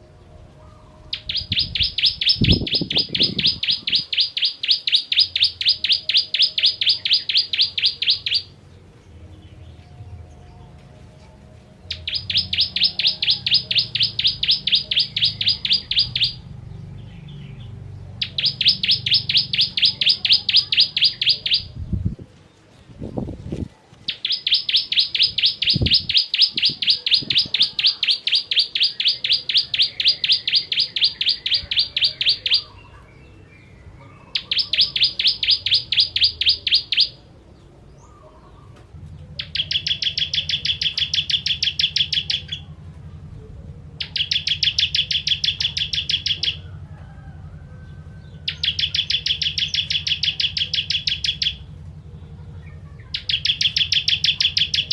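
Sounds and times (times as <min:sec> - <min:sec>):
bird singing rapid high notes: 0:01.1 - 0:08.6, 0:11.9 - 0:21.8, 0:24.1 - 0:33.0, 0:34.2 - 0:37.2, 0:39.4 - 0:42.8, 0:44.0 - 0:46.6, 0:48.4 - 0:51.8, 0:53.0 - 0:54.9.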